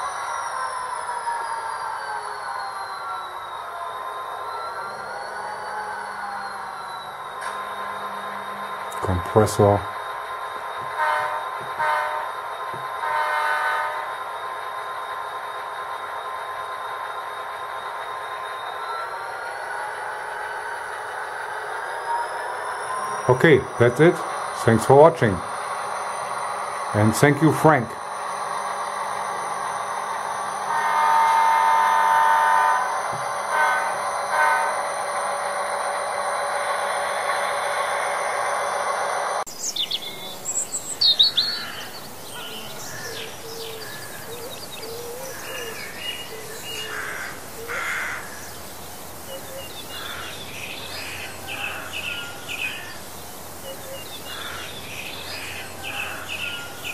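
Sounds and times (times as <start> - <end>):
diesel engine sound from small speaker: 1.5 - 38.1, 39.5 - 48.5
chord-like horn tone: 10.9 - 12.3, 13.0 - 14.1, 30.7 - 34.8
birds chirping: 17.8 - 30.6, 37.1 - 56.9.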